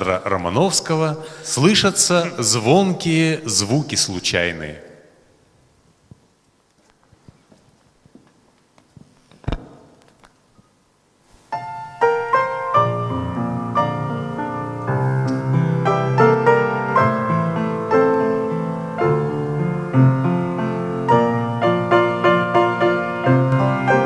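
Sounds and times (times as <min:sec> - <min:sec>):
piano playing chords: 0:11.5 - 0:24.0.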